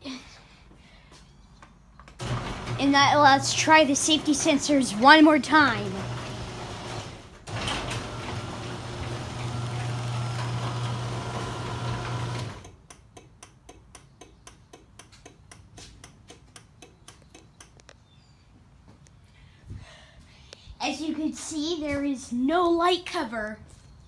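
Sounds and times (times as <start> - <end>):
garage door opener motor hum: 2.2 - 12.8.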